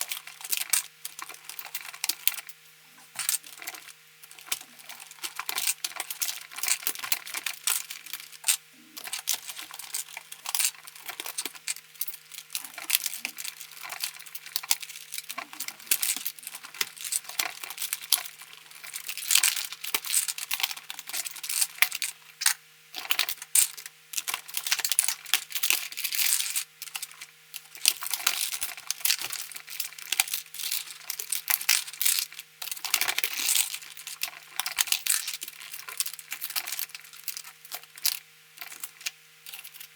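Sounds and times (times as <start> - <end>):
faint steady hum: 0.0 - 39.9
plastic keycaps clicking and rattling: 3.2 - 21.8.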